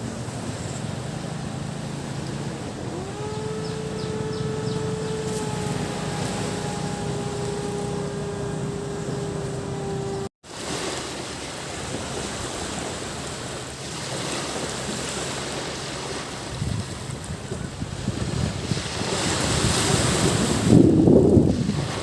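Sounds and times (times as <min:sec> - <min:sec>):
motor engine: 0:00.0 - 0:10.3
waves washing: 0:00.0 - 0:22.0.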